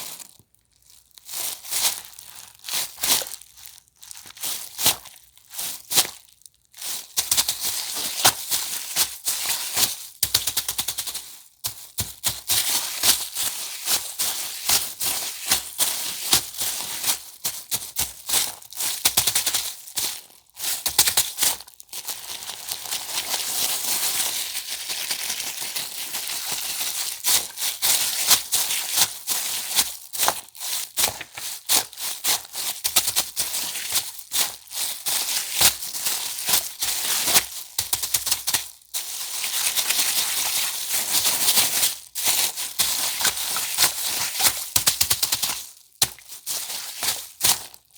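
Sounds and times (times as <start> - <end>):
plastic bag crackling: 11.8 - 47.9.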